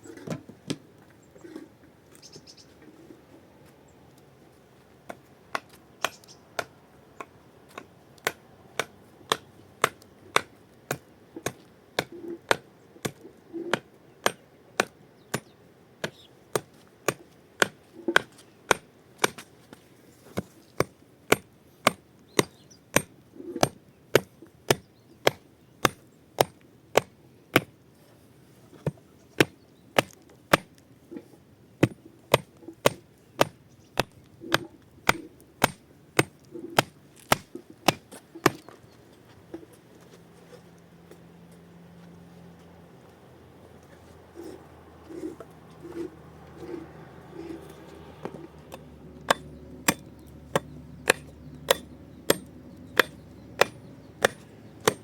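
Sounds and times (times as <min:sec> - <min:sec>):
chopping strikes: 0:48.2 - 0:55.0.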